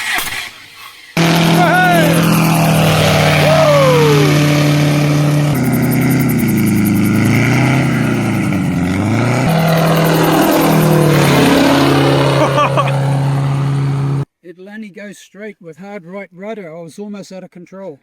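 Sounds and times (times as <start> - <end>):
gyrocopter engine and propeller: 1.2 - 14.2.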